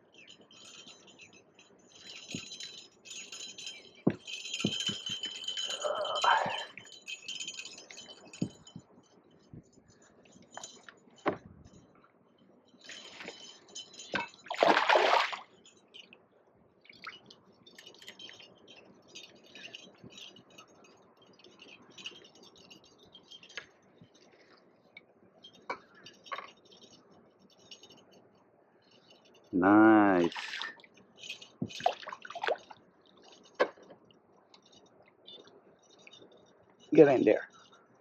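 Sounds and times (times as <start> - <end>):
water splashing: 14.4 - 15.4
small rapid ticks: 16.8 - 29.6, 30.7 - 37.9.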